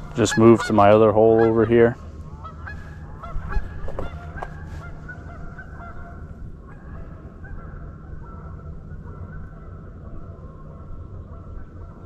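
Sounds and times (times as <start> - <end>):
geese honking: 0.0 - 12.0
low hum: 0.0 - 12.0.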